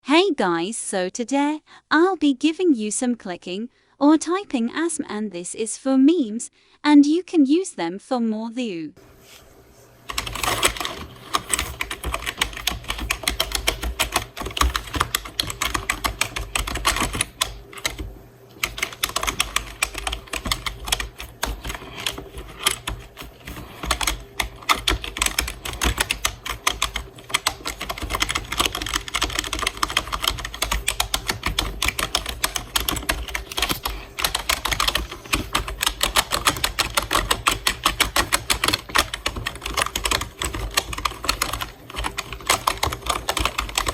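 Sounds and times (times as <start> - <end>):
rapid keyboard typing: 10.0 - 43.9.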